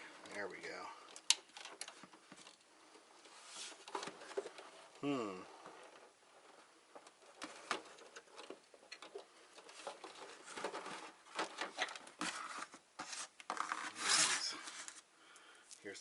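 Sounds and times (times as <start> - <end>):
parts clicking and rattling: 1.1 - 2.7, 5.6 - 12.4.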